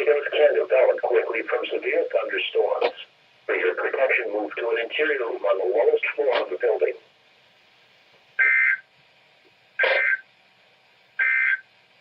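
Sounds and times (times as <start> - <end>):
digital data tone bursts: 8.4 - 8.9, 9.8 - 10.3, 11.2 - 11.7.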